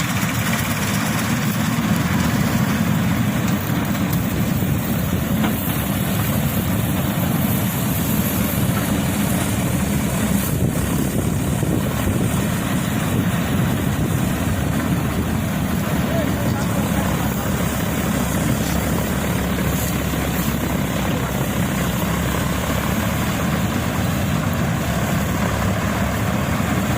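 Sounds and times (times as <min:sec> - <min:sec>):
combine harvester drone: 0:00.0 - 0:26.9.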